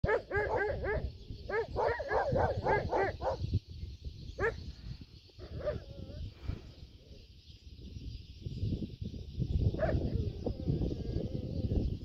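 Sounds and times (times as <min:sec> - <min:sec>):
animal barking calls: 0:00.0 - 0:03.4.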